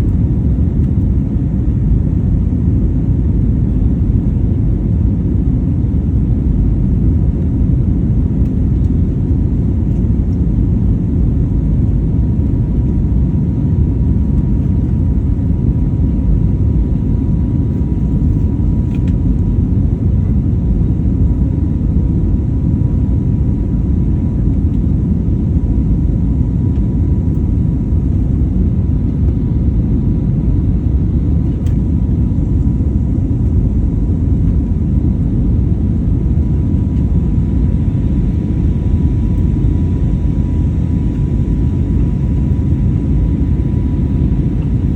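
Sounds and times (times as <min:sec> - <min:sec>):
airplane engine rumble: 0:00.0 - 0:44.9.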